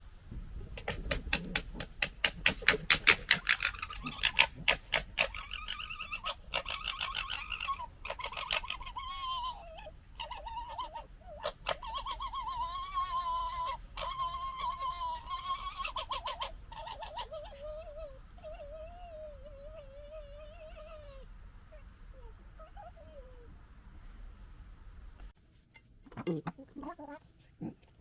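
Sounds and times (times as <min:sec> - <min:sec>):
foxes chattering: 0:00.8 - 0:21.2, 0:26.1 - 0:28.0
foxes whining: 0:00.8 - 0:21.3, 0:26.2 - 0:28.0.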